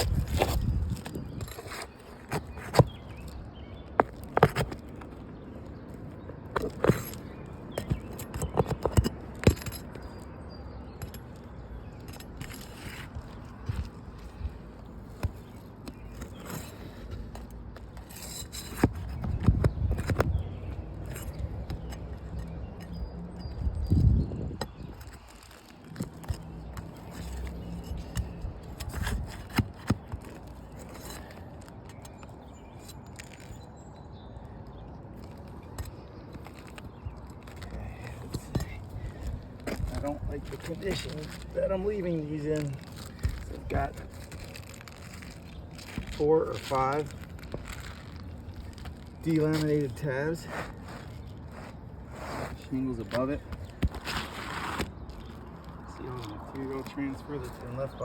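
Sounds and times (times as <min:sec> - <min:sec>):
scraping shingles: 0:11.0 - 0:23.0, 0:24.7 - 0:33.6, 0:35.2 - 0:57.8.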